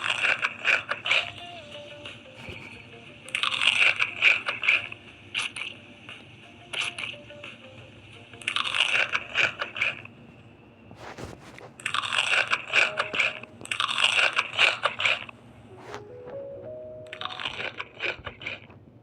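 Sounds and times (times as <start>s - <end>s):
crunchy chewing: 11.0s - 16.1s, 17.2s - 18.8s.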